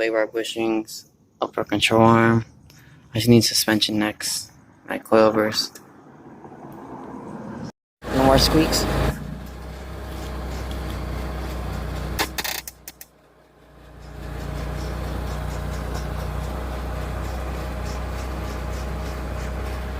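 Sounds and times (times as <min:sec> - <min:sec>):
car engine humming: 0:05.8 - 0:19.9.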